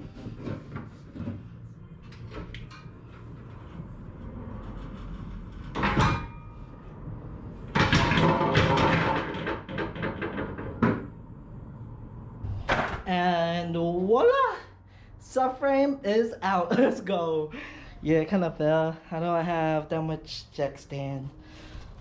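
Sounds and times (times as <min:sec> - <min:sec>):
metal knocks and clanks: 0:04.6 - 0:06.8, 0:07.7 - 0:11.2
metal subframe crashing down: 0:07.7 - 0:11.1.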